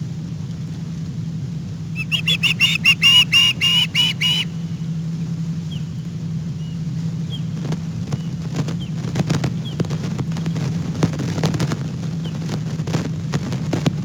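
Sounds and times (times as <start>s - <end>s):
low motor hum: 0.0s - 14.0s
faint high chirps: 2.0s - 4.7s.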